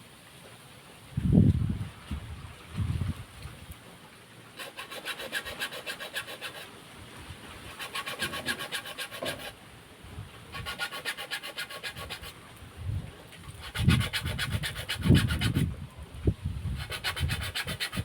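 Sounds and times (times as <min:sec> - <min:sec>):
hand tool rasping on wood: 0:04.6 - 0:06.7, 0:07.7 - 0:09.6, 0:10.5 - 0:12.4, 0:13.6 - 0:15.7, 0:16.8 - 0:18.0.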